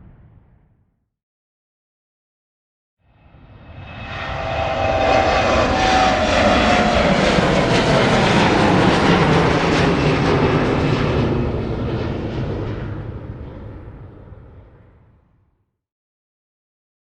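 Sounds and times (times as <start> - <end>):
aircraft engine flying past: 3.1 - 15.3.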